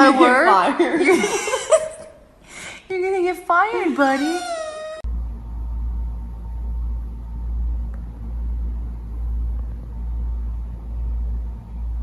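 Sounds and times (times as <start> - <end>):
pulsing low rumble: 5.0 - 12.0.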